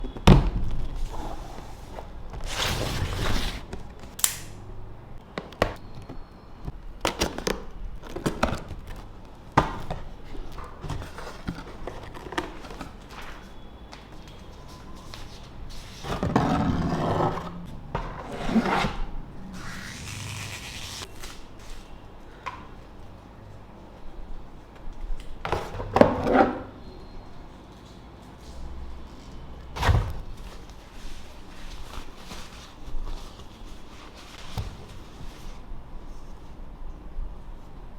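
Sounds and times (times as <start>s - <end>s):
cardboard and plastic rustling: 7.2s - 17.3s, 29.8s - 35.7s.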